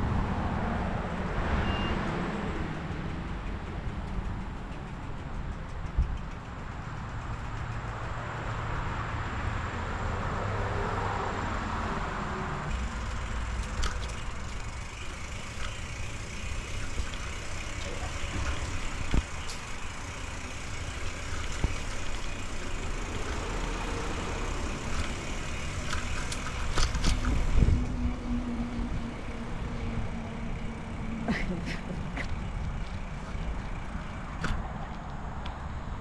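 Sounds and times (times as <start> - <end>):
bicycle tyres rolling: 0.0 - 10.1, 12.6 - 36.0
bike clicks and rattles: 2.3 - 9.6, 12.6 - 36.0
wind on microphone: 26.7 - 29.3.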